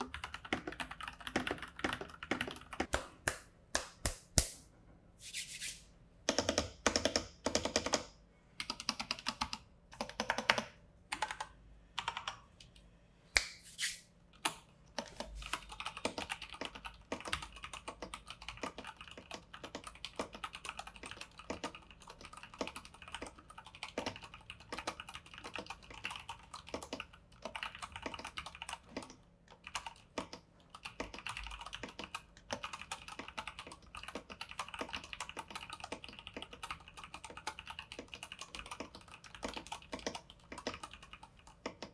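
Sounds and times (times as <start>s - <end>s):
typing on mechanical keyboard: 0.0s - 2.9s, 6.3s - 12.4s, 14.4s - 41.9s.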